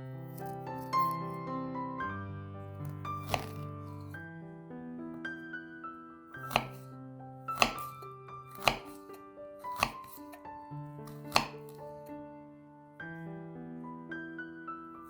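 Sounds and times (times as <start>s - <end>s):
background piano music: 0.0s - 15.0s
knife chopping on cutting board: 0.3s - 1.2s, 2.8s - 4.2s, 6.4s - 6.9s, 7.5s - 12.1s.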